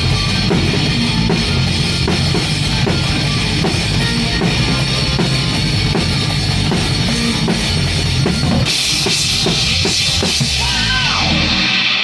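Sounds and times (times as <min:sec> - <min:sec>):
drum kit beat: 0:00.0 - 0:12.0
rock band playing live: 0:00.0 - 0:12.0.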